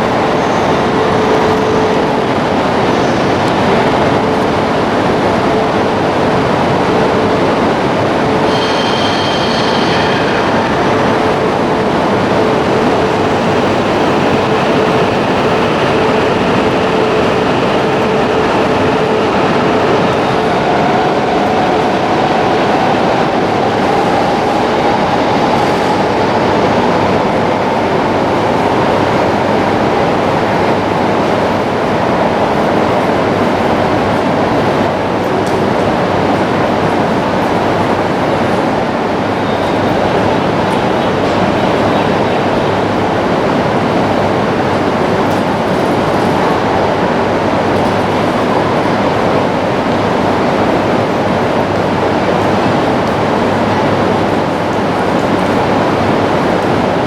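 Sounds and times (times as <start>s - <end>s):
train rumbling: 0.0s - 57.0s
high squeal: 8.4s - 11.7s.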